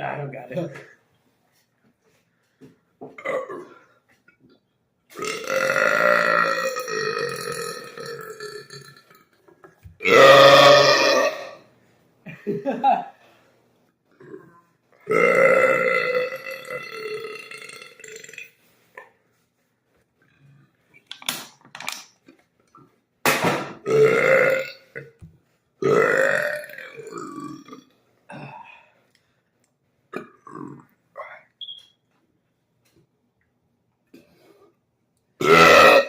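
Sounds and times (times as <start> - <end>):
loud burps: 3.1 - 3.9, 5.1 - 11.7, 14.1 - 18.6, 23.7 - 25.2, 25.8 - 28.8, 30.1 - 31.5, 35.4 - 36.0.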